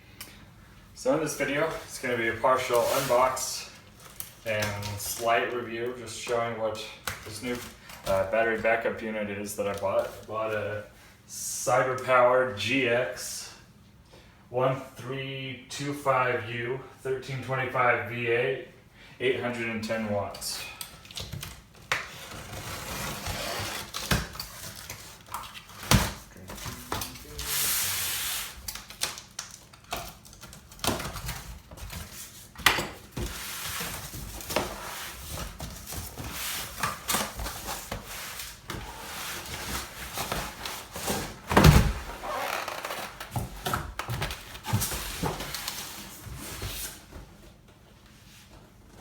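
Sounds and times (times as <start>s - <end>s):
cardboard scraping and rustling: 2.6s - 3.4s, 22.1s - 28.6s.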